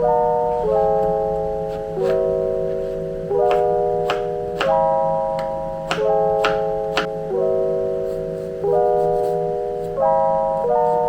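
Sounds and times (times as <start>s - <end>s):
soft lo-fi instrumental music: 0.0s - 11.0s.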